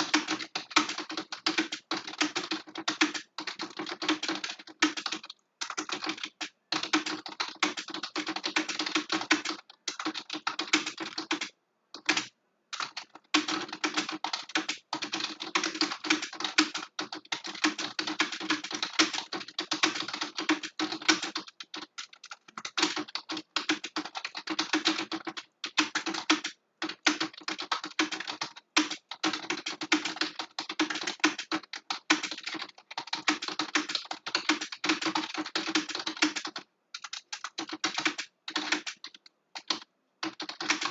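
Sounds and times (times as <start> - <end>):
fast keyboard typing: 0.0 - 40.9.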